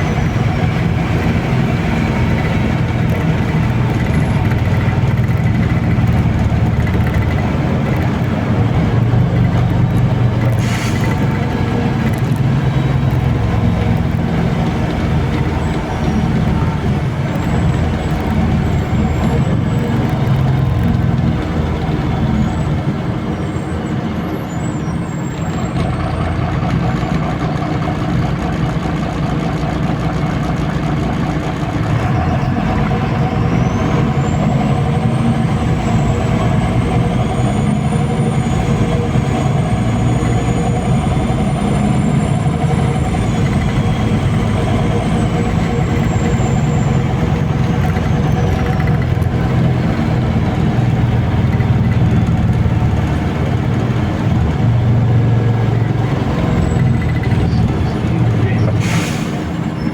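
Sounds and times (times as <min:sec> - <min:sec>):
bus engine running: 0:00.0 - 0:59.9.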